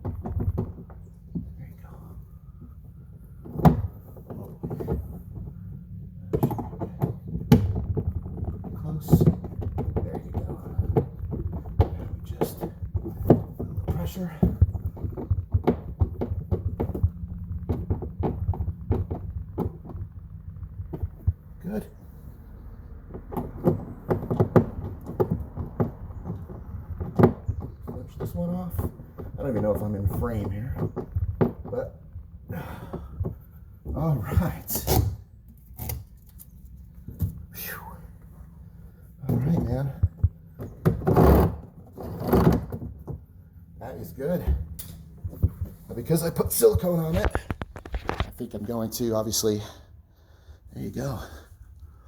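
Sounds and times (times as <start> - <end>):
hardware knocking against canoe hull: 0.0 - 1.9, 3.4 - 21.6, 22.9 - 35.0.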